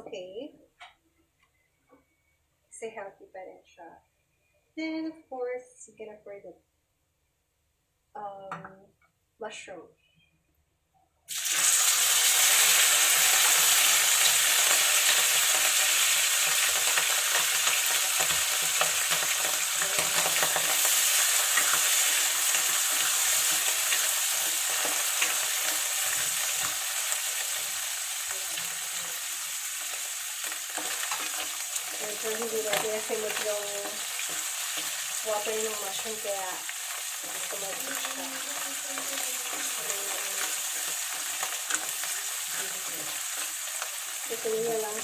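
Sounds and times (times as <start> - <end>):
mushrooms sizzling in hot oil: 11.3 - 45.0.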